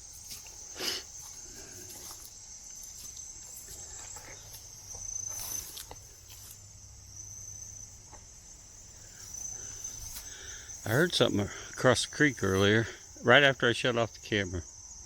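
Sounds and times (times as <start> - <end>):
footsteps in undergrowth: 0.0 - 11.4
insects trilling: 0.0 - 15.0.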